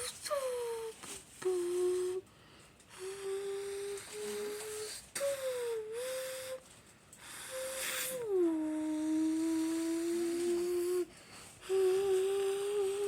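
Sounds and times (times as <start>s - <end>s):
person humming engine imitation: 0.0s - 2.2s, 2.9s - 6.6s, 7.2s - 13.0s
short breaths: 2.2s - 13.0s.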